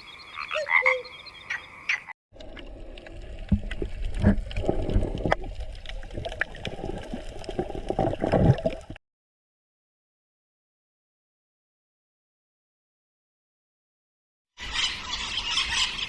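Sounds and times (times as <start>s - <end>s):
frog croaking: 0.0s - 2.1s
water splashing and gurgling: 2.4s - 9.0s.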